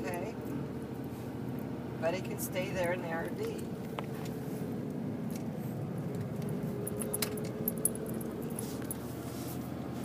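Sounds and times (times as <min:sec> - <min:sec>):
diesel truck engine hum: 0:00.0 - 0:10.0
light jingling clicks: 0:05.3 - 0:09.0.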